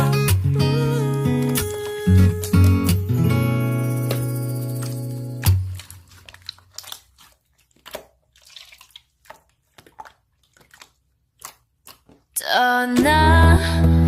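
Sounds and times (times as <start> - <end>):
slime squishing and popping: 4.0 - 12.4.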